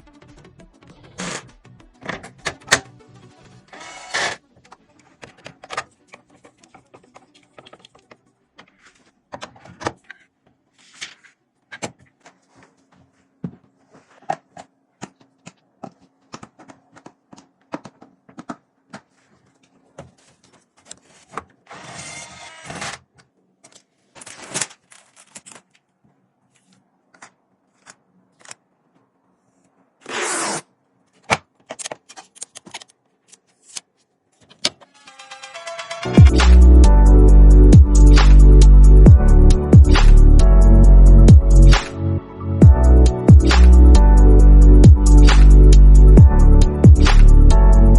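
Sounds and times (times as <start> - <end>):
parts scraping and sliding: 19.0 - 23.0.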